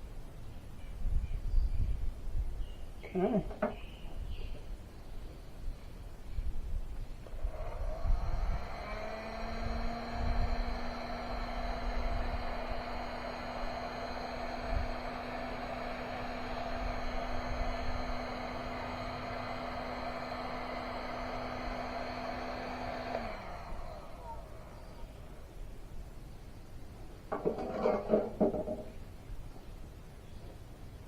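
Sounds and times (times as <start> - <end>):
small electric motor running: 7.3 - 25.2.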